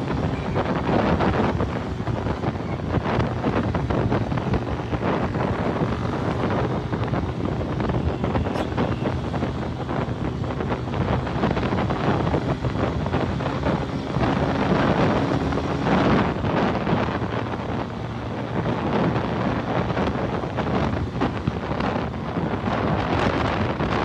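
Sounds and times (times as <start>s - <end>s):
motorcycle engine running: 0.0s - 24.0s
wind buffeting microphone: 0.0s - 24.0s.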